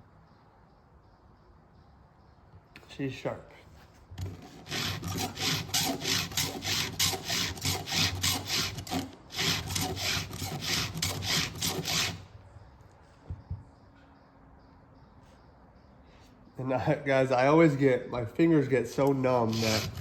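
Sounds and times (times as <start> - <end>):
file rasping on chainsaw teeth: 4.2 - 12.2, 19.5 - 20.0.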